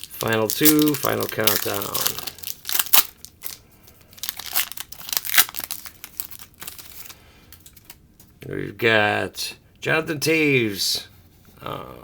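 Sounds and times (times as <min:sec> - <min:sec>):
foil ripping: 0:00.0 - 0:03.6, 0:04.2 - 0:07.1
foil wrapper crinkling: 0:00.0 - 0:08.0.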